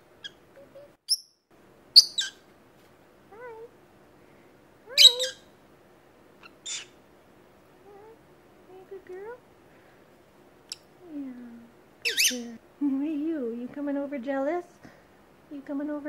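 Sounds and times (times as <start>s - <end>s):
lovebirds chirping: 0.0s - 2.5s, 4.2s - 5.6s, 6.3s - 7.1s, 10.6s - 13.2s.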